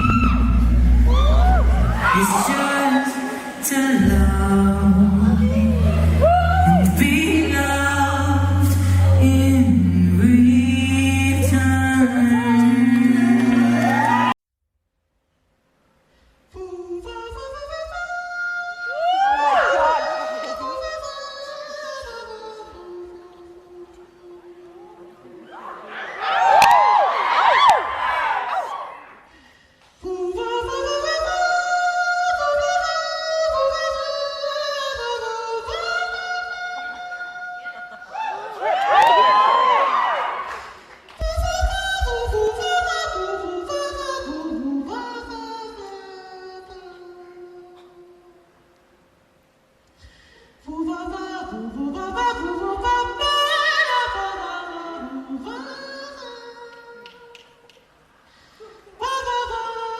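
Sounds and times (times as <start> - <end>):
audience cheering and screaming: 0.0 - 9.2, 12.0 - 14.4, 18.9 - 20.6, 24.9 - 29.3, 38.0 - 41.4
a cappella voices singing chords: 0.0 - 14.4, 16.5 - 25.5, 29.4 - 39.3, 40.6 - 48.5, 50.0 - 59.9
high lead voice singing: 0.0 - 14.4
lower harmony voices singing: 0.0 - 14.4.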